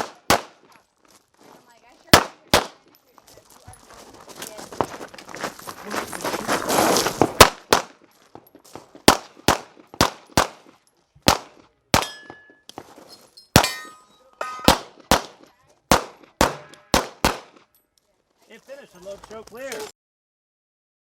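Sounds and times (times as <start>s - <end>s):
pistol shots: 0.0s - 0.7s, 2.1s - 2.8s, 7.4s - 8.0s, 9.0s - 12.5s, 13.6s - 17.7s
steel targets clanging: 12.0s - 14.8s, 16.4s - 17.0s.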